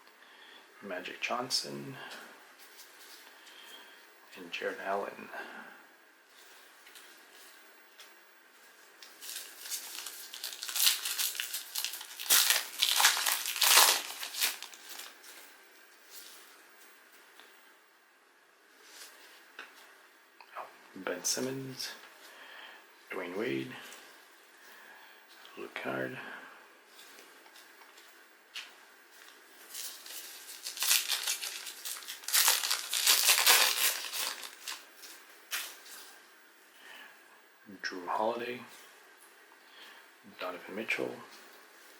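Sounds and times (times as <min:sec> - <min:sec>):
plastic wrapper tearing and crinkling: 0:09.1 - 0:15.2, 0:29.7 - 0:34.9.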